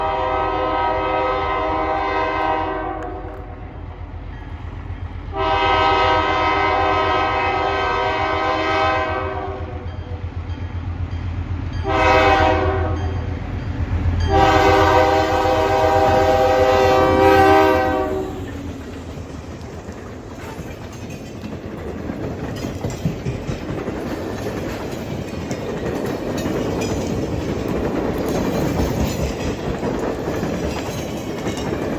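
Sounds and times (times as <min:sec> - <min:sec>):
locomotive air horn blasts: 0:00.0 - 0:03.5, 0:05.3 - 0:09.8, 0:11.8 - 0:13.2, 0:14.3 - 0:18.6.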